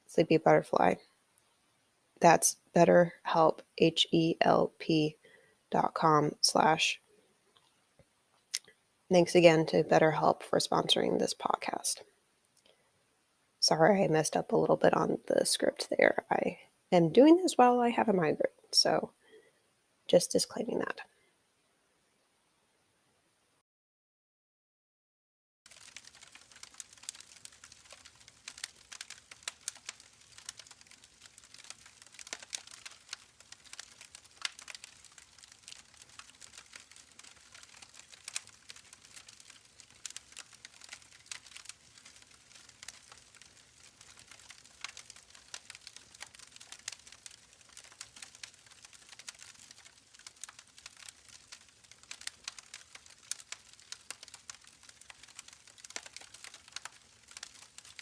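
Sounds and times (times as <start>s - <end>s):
campfire crackling: 25.7s - 58.0s.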